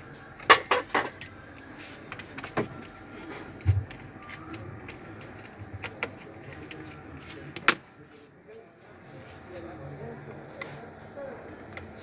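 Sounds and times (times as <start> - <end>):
clicks and taps of laptop parts: 3.6 - 7.8.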